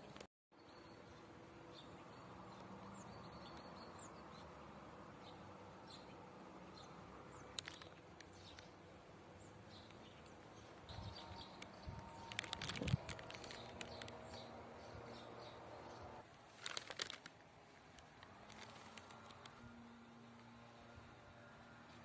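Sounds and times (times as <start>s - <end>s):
bird chirps: 0.0s - 16.2s.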